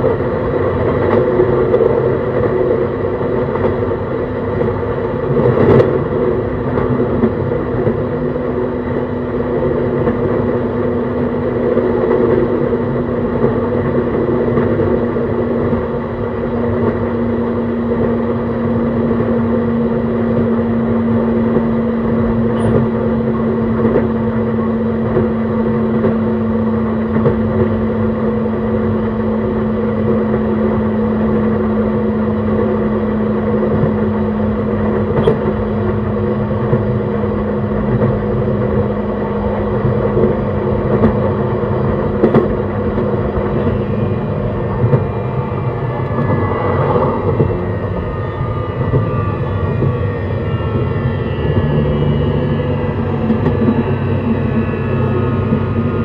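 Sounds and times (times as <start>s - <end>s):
motor and inverter hum: 0.0s - 56.0s
train wheels rumbling on rail: 0.0s - 56.0s
faint high whine: 43.1s - 56.0s.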